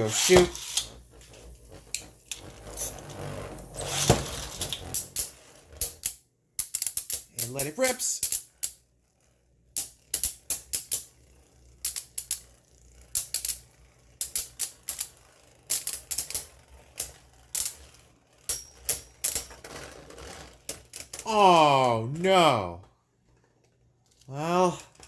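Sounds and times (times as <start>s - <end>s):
spinning tops clashing: 0.0s - 1.2s.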